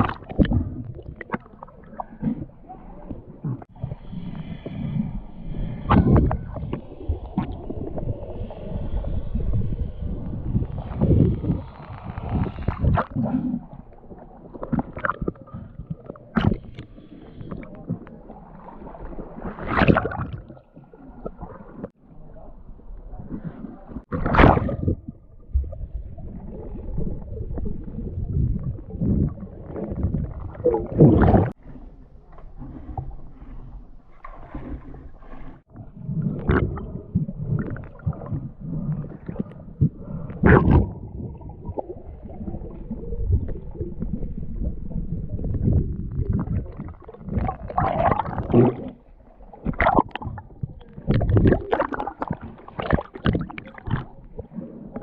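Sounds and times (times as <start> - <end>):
knocks and splashes: 0.0 - 3.8, 14.6 - 16.9, 19.3 - 22.0, 24.0 - 25.9, 28.2 - 31.6, 34.2 - 42.5, 45.4 - 49.0, 49.6 - 55.0
water sloshing and gurgling: 0.0 - 55.0.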